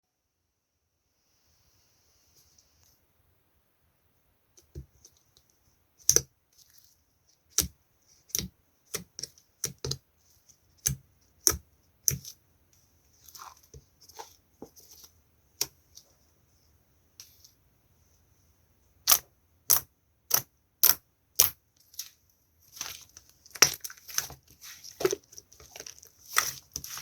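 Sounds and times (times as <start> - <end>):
slime squishing: 6.0 - 12.4, 13.0 - 16.2, 19.0 - 27.0.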